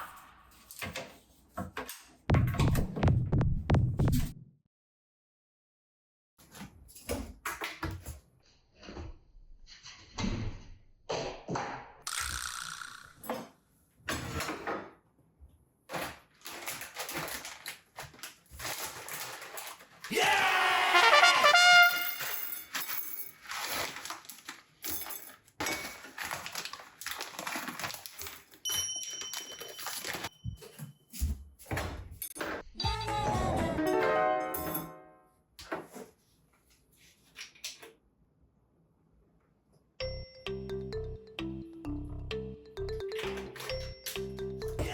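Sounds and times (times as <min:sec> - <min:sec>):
rustling: 0:16.4 - 0:20.1, 0:22.2 - 0:25.3
brassy trumpet-like sound effect: 0:20.8 - 0:22.3.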